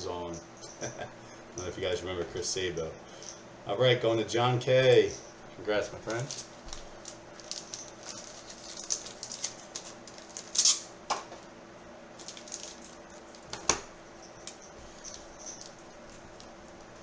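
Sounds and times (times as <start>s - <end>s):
cards rustling and scraping: 6.0s - 10.9s.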